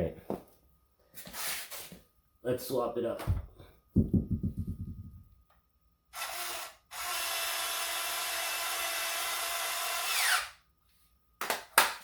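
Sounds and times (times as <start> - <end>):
small electric motor whining: 6.1 - 10.6.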